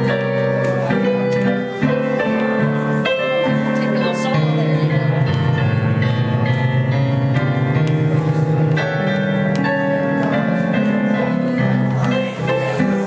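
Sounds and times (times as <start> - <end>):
keyboard playing sustained chords: 0.0 - 13.0.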